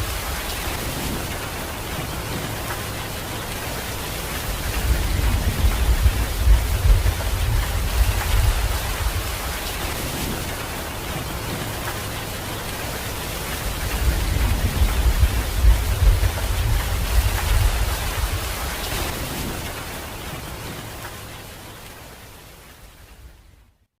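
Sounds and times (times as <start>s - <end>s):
heavy rain falling: 0.0s - 23.8s
thunder rumbling: 4.3s - 12.0s, 13.5s - 19.8s.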